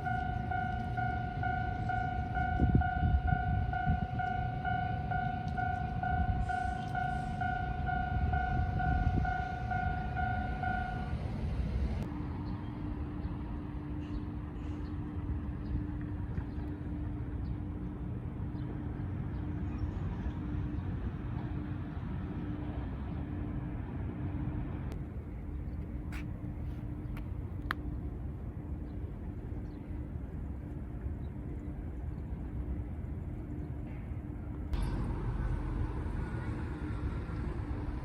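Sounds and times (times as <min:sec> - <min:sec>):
level crossing warning bell: 0:00.0 - 0:11.2
low pulsing warning tone: 0:00.0 - 0:24.8, 0:31.5 - 0:38.0
steady low rumble: 0:00.0 - 0:38.0.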